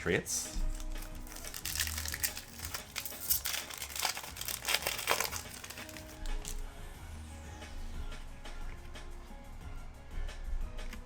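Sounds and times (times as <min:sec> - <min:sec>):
background music: 0:00.0 - 0:11.0
plastic wrapper crinkling and tearing: 0:00.6 - 0:06.6.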